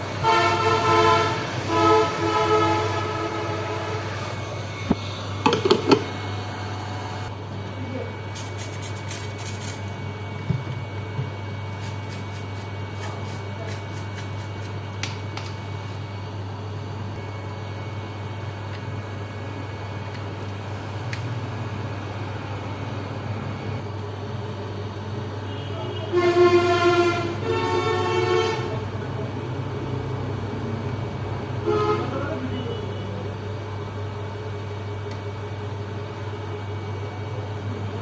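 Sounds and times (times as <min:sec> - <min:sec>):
steady low hum: 0:00.0 - 0:31.8
vehicle horn honking: 0:00.2 - 0:04.2, 0:25.5 - 0:28.8, 0:31.6 - 0:33.2.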